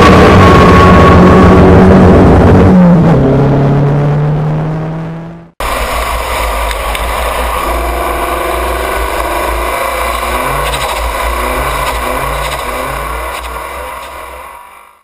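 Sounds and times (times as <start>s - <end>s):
wind noise: 0.0s - 4.0s
car engine under load: 0.0s - 15.0s
road noise: 0.0s - 15.0s.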